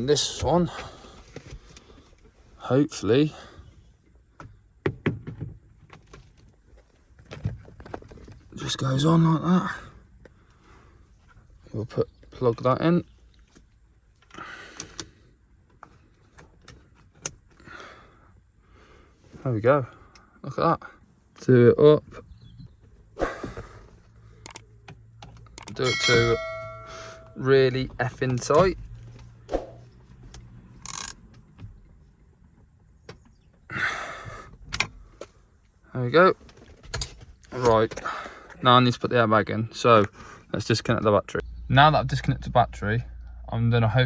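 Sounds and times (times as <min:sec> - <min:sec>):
sharp plastic clicks: 0:24.4 - 0:25.8
tool clicks and knocks: 0:25.6 - 0:27.4
faint low hum: 0:41.2 - 0:44.0.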